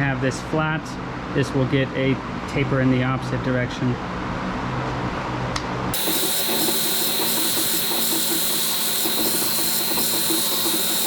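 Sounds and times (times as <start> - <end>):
belt grinder grinding steel: 6.0 - 11.0.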